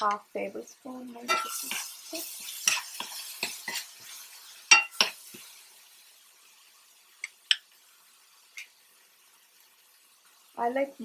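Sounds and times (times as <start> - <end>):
oil sizzling faintly: 0.0 - 11.0
metal spoon scraping a pan: 1.2 - 5.6.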